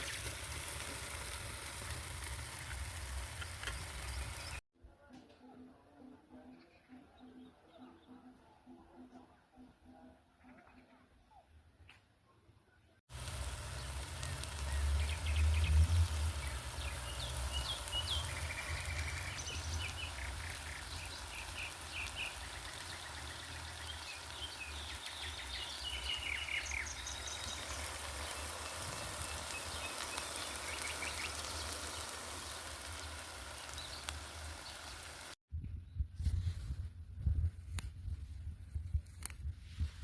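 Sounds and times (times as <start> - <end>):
birds chirping and calling: 3.2 - 4.6, 13.7 - 35.3.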